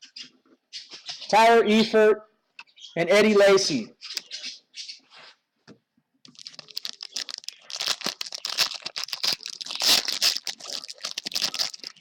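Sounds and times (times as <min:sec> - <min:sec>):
card pack wrapper tearing and crinkling: 0:06.3 - 0:12.0.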